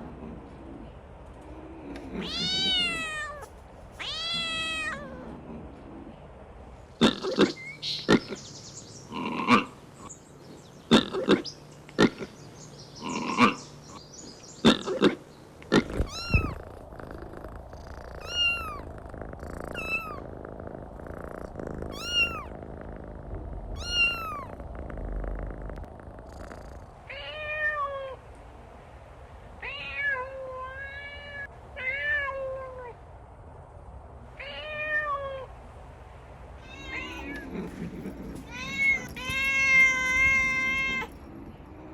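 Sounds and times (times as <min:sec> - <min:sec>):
kittens mewing: 0:01.8 - 0:05.4, 0:14.7 - 0:28.2, 0:36.6 - 0:41.9.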